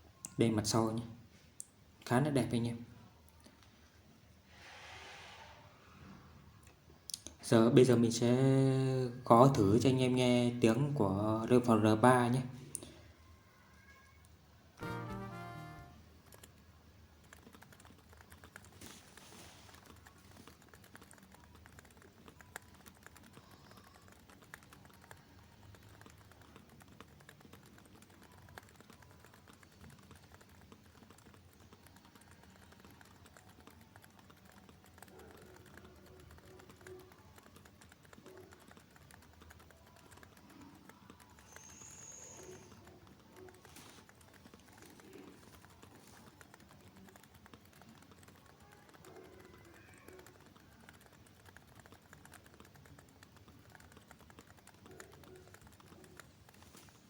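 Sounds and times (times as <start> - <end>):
soft keyboard keystrokes: 14.8 - 57.0.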